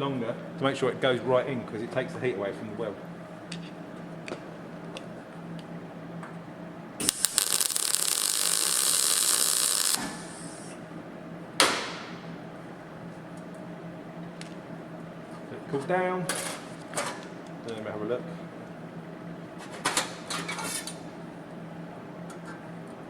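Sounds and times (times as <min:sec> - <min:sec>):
welding arc crackling: 0:07.0 - 0:10.7.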